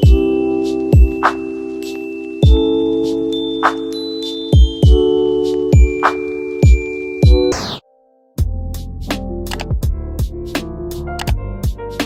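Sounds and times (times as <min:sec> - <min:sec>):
held synth notes: 0:00.0 - 0:07.8.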